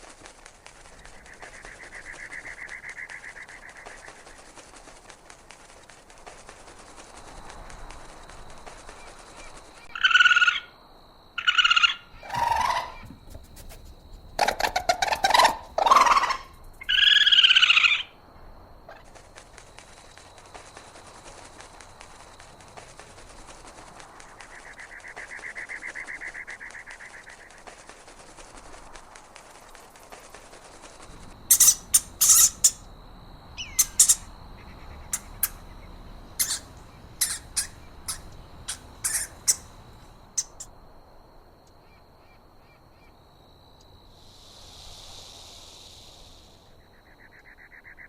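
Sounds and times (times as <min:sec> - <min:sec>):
bird shrill calls: 0:31.5 - 0:32.8, 0:33.6 - 0:35.8, 0:36.4 - 0:39.7, 0:40.4 - 0:40.7.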